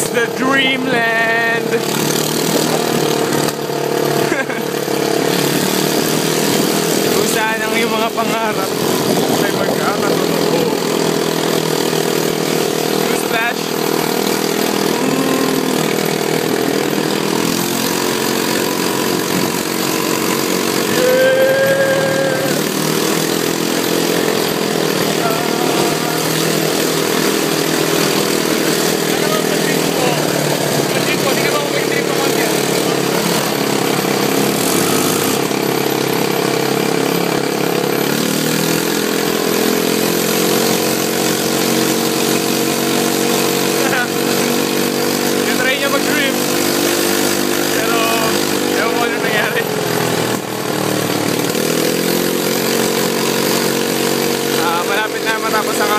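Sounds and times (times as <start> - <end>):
atv engine droning: 0.0 - 55.9
held high tone: 14.7 - 16.9, 20.8 - 22.9.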